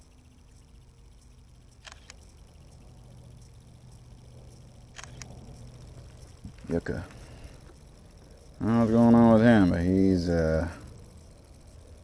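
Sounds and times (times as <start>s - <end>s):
faint low hum: 0.0s - 12.0s
sharp clicks: 0.5s - 7.8s.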